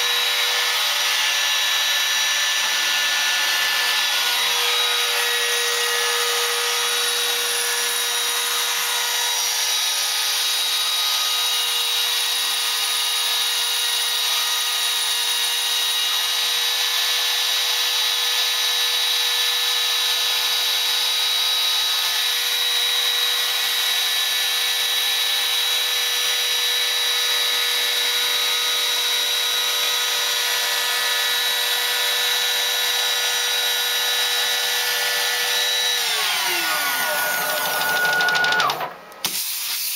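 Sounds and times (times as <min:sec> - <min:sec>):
router spindle whine: 0:00.0 - 0:39.3
cutting hiss: 0:37.0 - 0:39.9.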